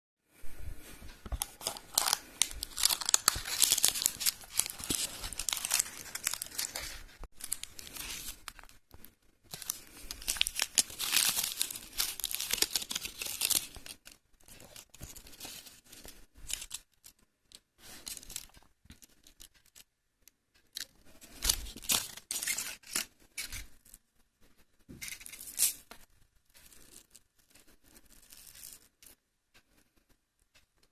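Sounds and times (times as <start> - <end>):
quiet packaging handling: 0.4 - 30.6
wrappers crinkling: 1.3 - 17.0, 21.2 - 23.6.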